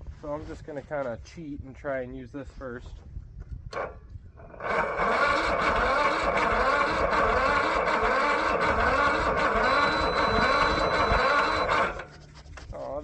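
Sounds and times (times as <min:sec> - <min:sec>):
mower engine cranking: 0:03.7 - 0:12.1.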